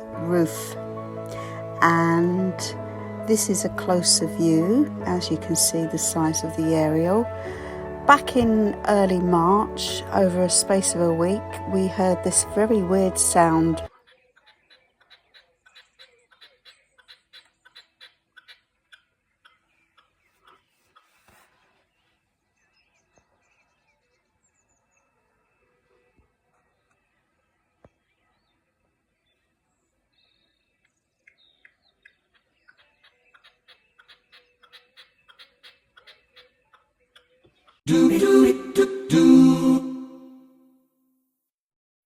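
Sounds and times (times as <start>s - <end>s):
bird making sharp clicks: 14.1s - 21.3s, 30.8s - 37.8s
rustling: 20.3s - 22.5s.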